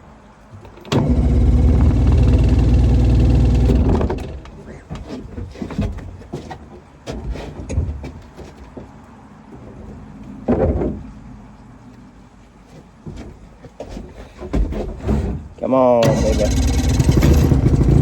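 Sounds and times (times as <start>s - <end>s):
outboard motor cranking: 0.8s - 4.6s, 16.0s - 18.0s.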